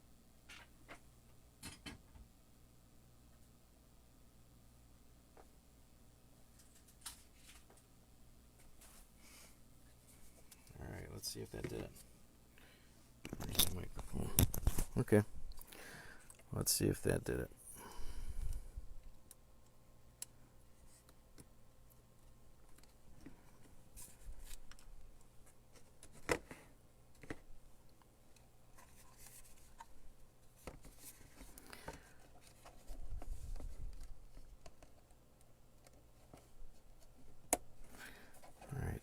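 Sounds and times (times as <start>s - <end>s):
plastic parts clicking and scraping: 13.3s - 14.9s.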